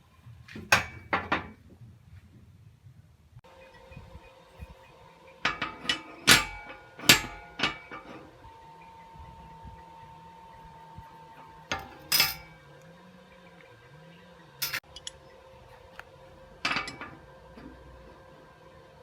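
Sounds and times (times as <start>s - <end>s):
metal tools clinking and knocking: 5.4s - 8.4s, 11.4s - 12.6s, 14.6s - 15.3s, 16.6s - 18.2s.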